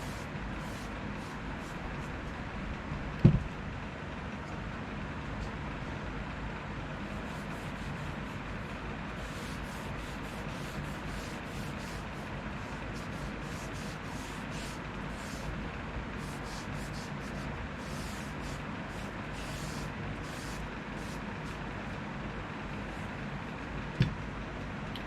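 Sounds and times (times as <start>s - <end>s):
steady low hum: 0.0s - 25.0s
cloth rubbing wooden handle: 9.2s - 15.5s, 16.2s - 21.6s.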